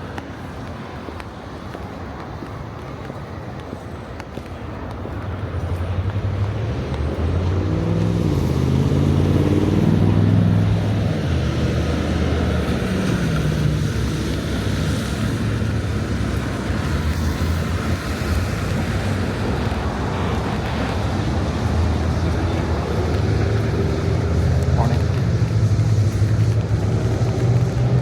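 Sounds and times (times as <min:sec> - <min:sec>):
background traffic hum: 0:00.0 - 0:28.0
vehicle engine passing by: 0:06.2 - 0:14.1.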